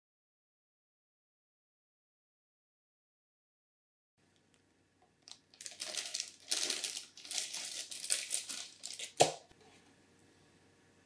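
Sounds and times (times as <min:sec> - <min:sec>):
plastic packaging crinkling: 0:05.2 - 0:09.5.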